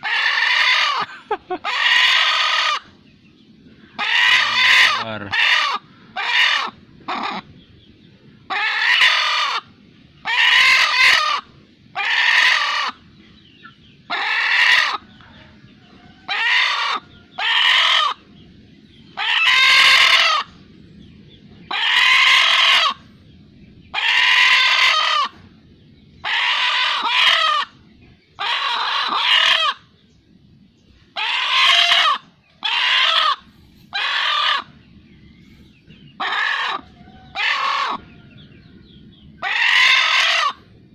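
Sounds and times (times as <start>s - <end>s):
chicken squawking: 0.0s - 3.0s, 3.9s - 7.6s, 8.5s - 13.0s, 13.6s - 15.2s, 16.2s - 18.2s, 19.2s - 20.6s, 21.7s - 23.0s, 23.9s - 25.4s, 26.2s - 27.8s, 28.4s - 29.9s, 31.1s - 34.9s, 36.2s - 38.2s, 39.4s - 40.7s.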